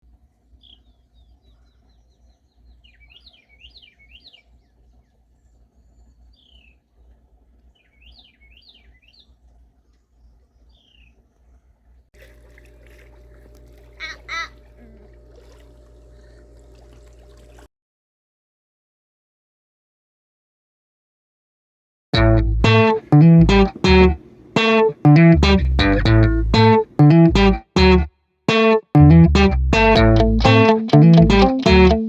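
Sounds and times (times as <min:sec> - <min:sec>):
songbirds singing: 0:00.5 - 0:11.8, 0:13.5 - 0:17.6
steady hum: 0:12.2 - 0:17.7, 0:22.2 - 0:28.0.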